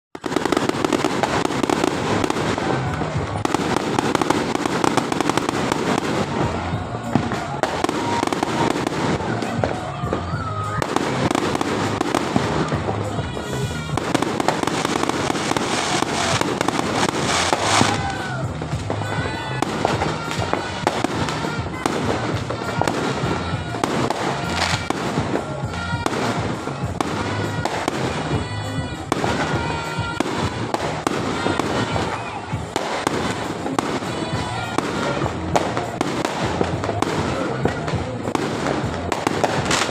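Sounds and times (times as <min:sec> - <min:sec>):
fireworks bangs and crackling: 0:00.1 - 0:39.9
music playing: 0:00.1 - 0:39.9.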